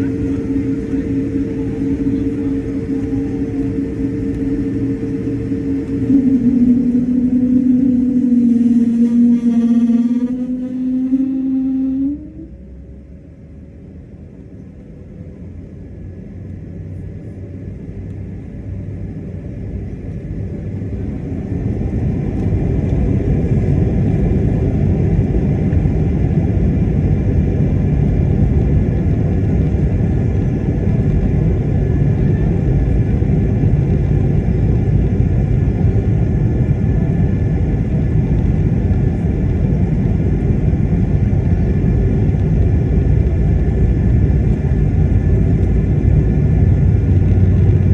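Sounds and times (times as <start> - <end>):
jet engines spooling up: 0.0 - 13.0
high engine tones: 0.0 - 13.4.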